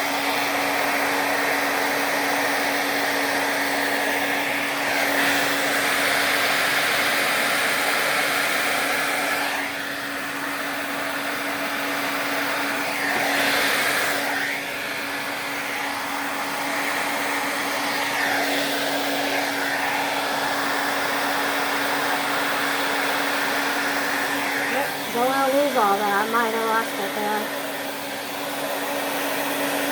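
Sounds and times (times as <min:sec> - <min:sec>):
hair dryer blowing air: 0:00.0 - 0:29.9.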